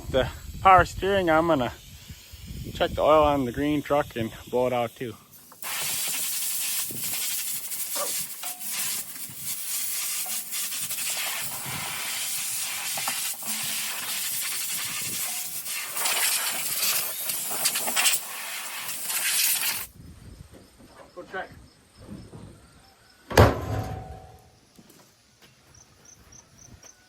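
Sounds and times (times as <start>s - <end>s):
compressed air hissing from nozzle: 0.1s - 19.9s.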